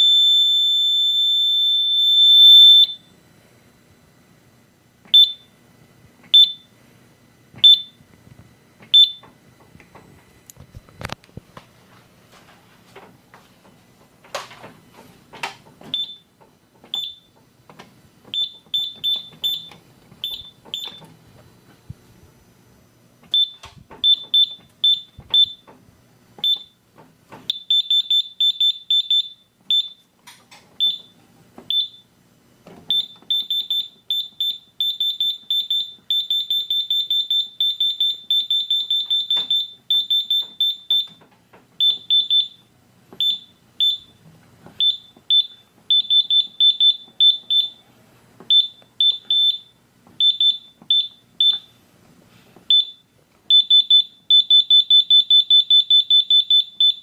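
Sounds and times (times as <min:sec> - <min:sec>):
keypad beeps: 0:00.0 - 0:03.1, 0:05.1 - 0:05.5, 0:06.3 - 0:06.7, 0:07.6 - 0:08.0, 0:08.9 - 0:09.3, 0:15.9 - 0:16.3, 0:16.9 - 0:17.4, 0:18.3 - 0:21.1, 0:23.3 - 0:25.7, 0:26.4 - 0:26.8, 0:27.5 - 0:30.0, 0:30.8 - 0:32.1, 0:32.9 - 0:41.2, 0:41.8 - 0:44.2, 0:44.8 - 0:47.8, 0:48.5 - 0:51.8, 0:52.7 - 0:57.0.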